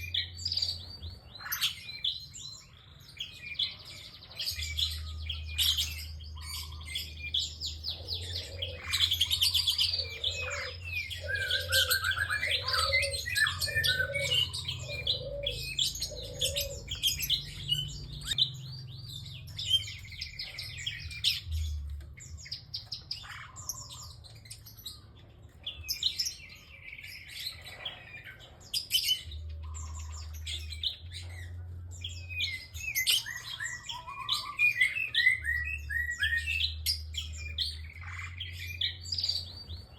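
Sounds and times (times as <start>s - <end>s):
bird chirping and trilling: 0.0s - 39.9s.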